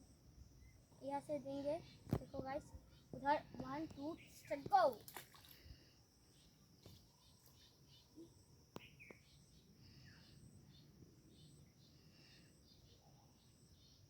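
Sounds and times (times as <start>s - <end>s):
faint chirps: 0.0s - 14.0s.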